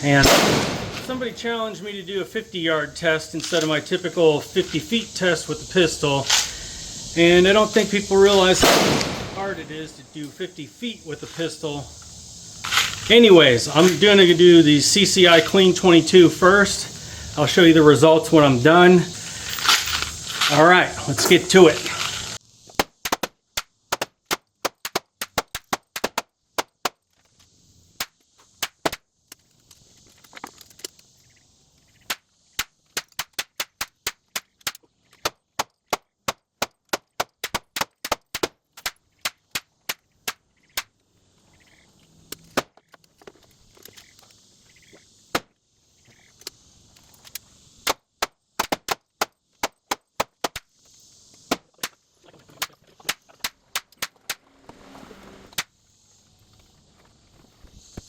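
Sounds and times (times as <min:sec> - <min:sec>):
rifle shots: 0:00.1 - 0:01.8, 0:08.3 - 0:10.4.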